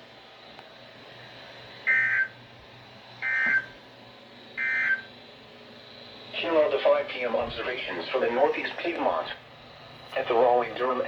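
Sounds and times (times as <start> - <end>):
digital data bursts: 1.8 - 2.4, 4.6 - 5.1
faint radio hiss: 4.8 - 11.0.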